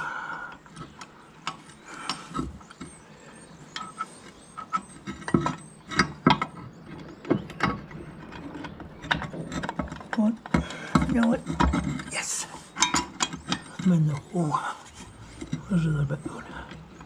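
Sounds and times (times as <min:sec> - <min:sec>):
metallic clicks and knocks: 0:03.7 - 0:14.3.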